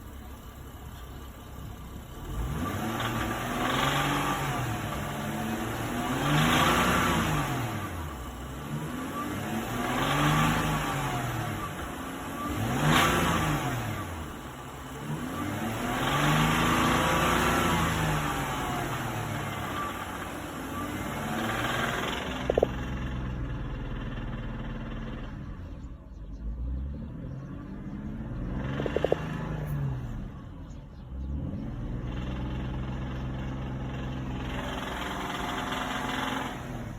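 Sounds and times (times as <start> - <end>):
car engine revving: 0.0 - 36.9.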